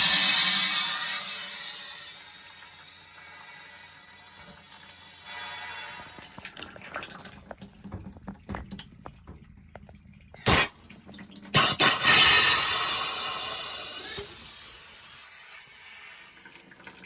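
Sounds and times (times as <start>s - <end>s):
loud bursts of noise: 0.0s - 2.5s
water dripping and trickling: 1.3s - 12.0s, 14.1s - 17.0s.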